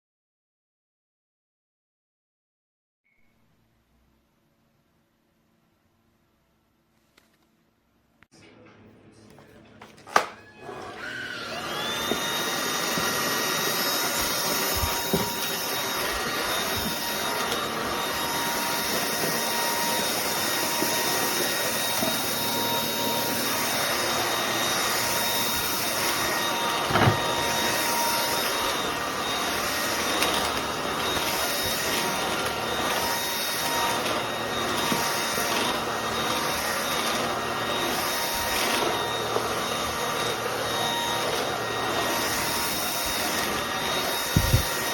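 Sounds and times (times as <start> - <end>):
vacuum motor whining: 10.0 - 44.9.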